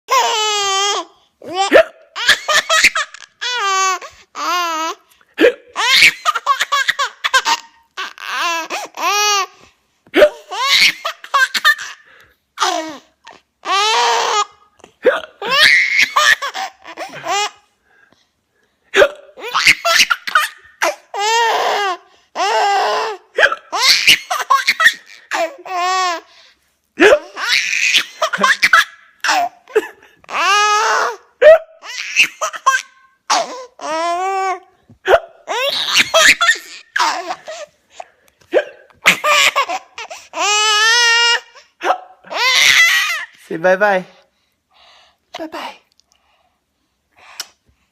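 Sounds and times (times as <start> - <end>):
child hiccups: 1.6 - 2.2, 5.4 - 5.8, 10.2 - 10.5, 19.0 - 19.4, 23.4 - 23.8, 27.0 - 27.3, 35.0 - 35.5, 38.5 - 38.9.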